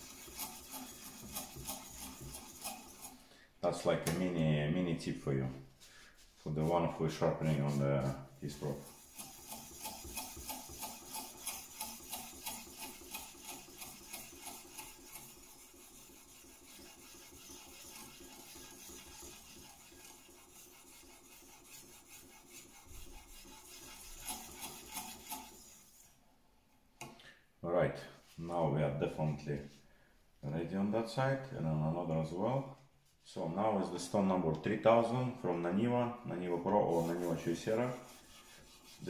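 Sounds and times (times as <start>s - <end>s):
stone scraping knife edge: 9.1s - 15.3s, 22.9s - 25.6s.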